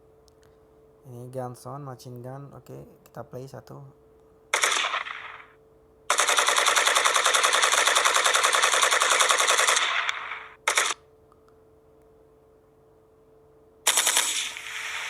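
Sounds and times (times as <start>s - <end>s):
machine gun firing: 4.5s - 11.0s, 13.9s - 15.0s.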